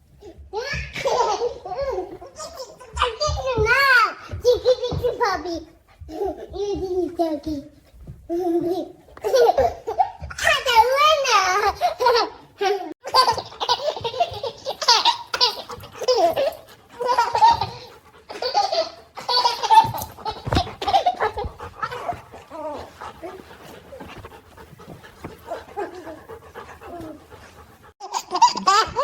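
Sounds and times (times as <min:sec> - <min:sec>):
baby laughing: 0:08.3 - 0:24.2, 0:28.0 - 0:29.0
puppy panting: 0:13.2 - 0:29.0.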